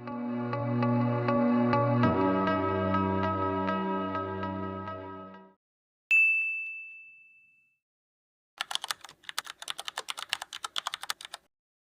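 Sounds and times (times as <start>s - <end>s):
bright bell-like ding: 6.1s - 7.8s
rapid keyboard clicking: 8.6s - 11.5s.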